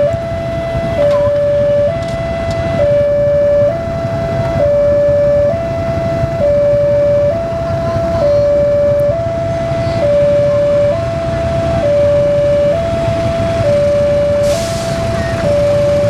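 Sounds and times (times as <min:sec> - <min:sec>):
two-tone warning siren: 0:00.0 - 0:16.0.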